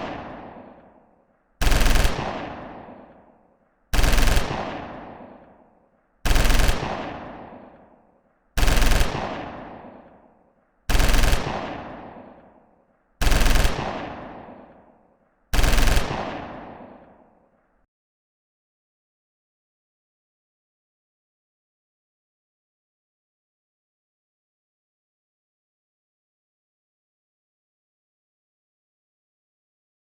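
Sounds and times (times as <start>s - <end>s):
machine gun firing bursts: 1.6s - 3.3s, 3.9s - 5.6s, 6.2s - 8.0s, 8.6s - 10.3s, 10.9s - 12.6s, 13.2s - 14.9s, 15.5s - 17.2s.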